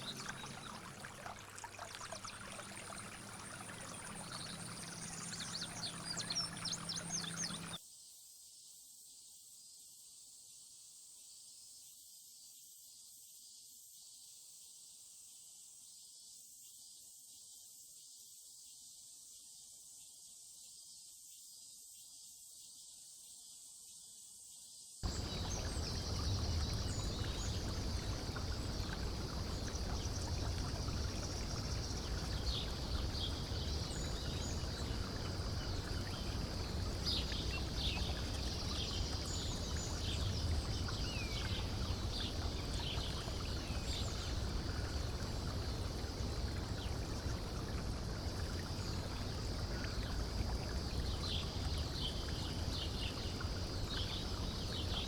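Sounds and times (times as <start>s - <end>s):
bird chirps: 0.0s - 1.3s, 2.2s - 7.8s, 25.1s - 42.2s
cicada drone: 2.2s - 7.8s, 25.0s - 55.0s
constant rushing noise: 25.1s - 45.5s.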